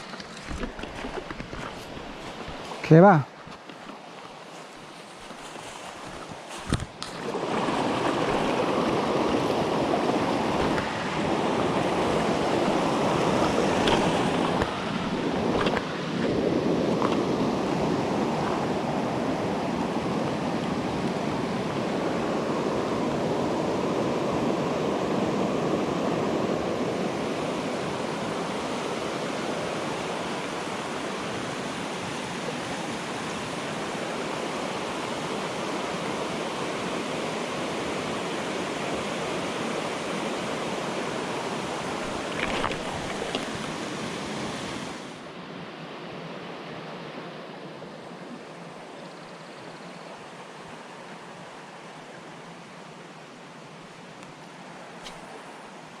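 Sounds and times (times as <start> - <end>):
stream water rushing over rocks: 0.0 - 45.4, 50.0 - 56.0.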